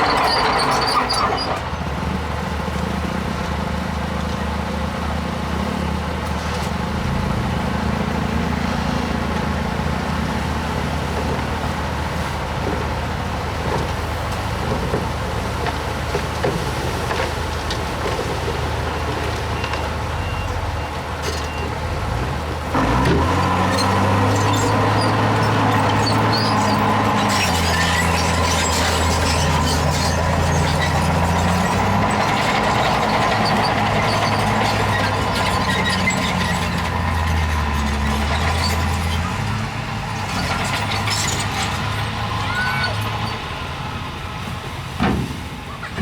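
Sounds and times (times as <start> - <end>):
heavy diesel engine running: 0.0 - 46.0
metal knocks and clanks: 45.0 - 46.0.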